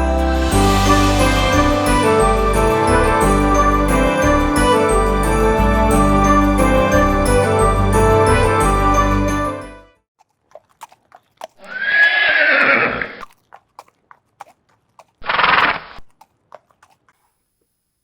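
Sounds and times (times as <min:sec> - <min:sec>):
music: 0:00.0 - 0:10.0
hooves clip-clopping: 0:10.2 - 0:12.3, 0:13.1 - 0:17.4
horse neighing: 0:11.6 - 0:13.2.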